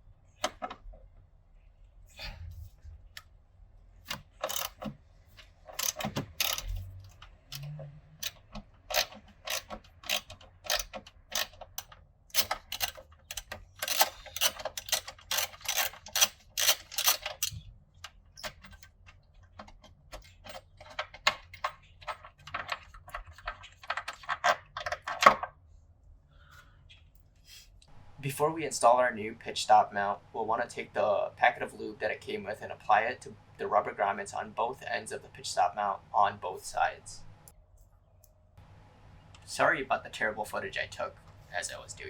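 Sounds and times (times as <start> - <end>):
ratchet wrench clicking: 4.1 - 4.9, 5.8 - 6.8, 7.5 - 17.6.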